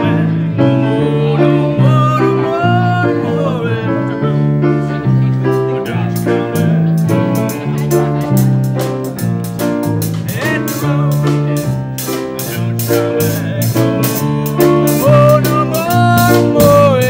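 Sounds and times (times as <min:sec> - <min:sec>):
person singing: 0:00.0 - 0:08.5, 0:10.0 - 0:17.0
keyboard bass line: 0:00.0 - 0:17.0
drum kit beat: 0:05.1 - 0:17.0.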